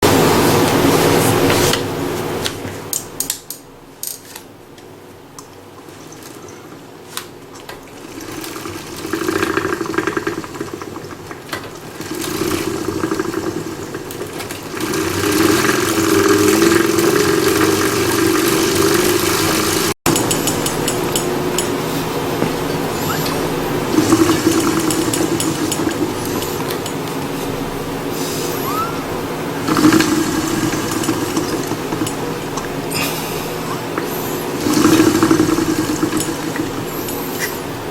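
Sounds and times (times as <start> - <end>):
bike trainer whirring and rattling: 7.1 - 37.9
sharp clicks: 20.1 - 21.7.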